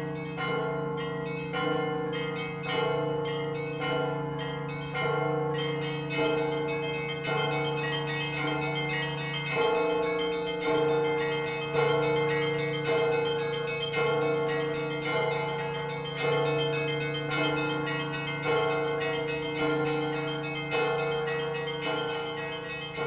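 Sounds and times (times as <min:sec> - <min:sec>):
church bell struck evenly: 0:00.0 - 0:23.0.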